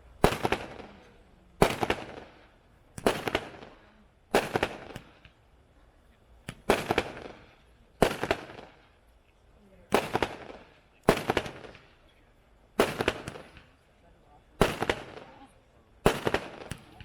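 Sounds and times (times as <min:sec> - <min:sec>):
firework cake bangs: 0:01.6 - 0:02.2, 0:06.4 - 0:07.4, 0:08.0 - 0:08.7, 0:09.9 - 0:11.9, 0:12.8 - 0:13.8, 0:14.6 - 0:15.4, 0:16.0 - 0:17.0.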